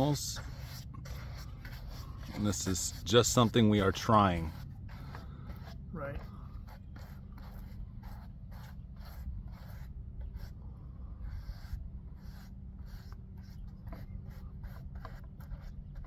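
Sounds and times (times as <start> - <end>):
scratchy rubbing strokes: 0.0 - 16.0
steady low hum: 0.0 - 16.0.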